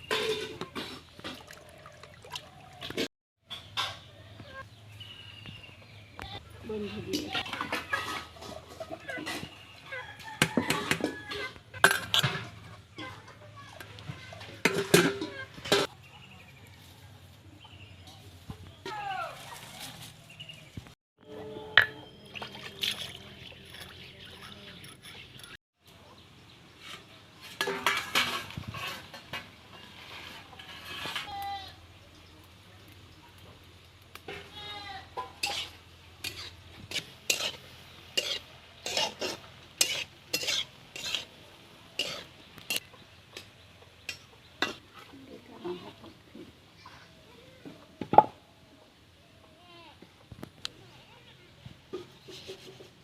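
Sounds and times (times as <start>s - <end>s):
kitchen utensils clinking: 0.0s - 1.7s, 7.0s - 9.6s, 10.4s - 13.4s, 14.6s - 15.9s, 27.4s - 29.6s, 35.2s - 37.6s
metal utensils scraping a pot: 0.0s - 1.7s, 6.9s - 13.5s, 14.3s - 15.9s, 21.2s - 25.6s, 26.8s - 31.7s, 34.2s - 41.4s, 42.0s - 46.2s, 51.9s - 53.0s
chickens clucking: 6.9s - 13.4s, 35.1s - 47.0s.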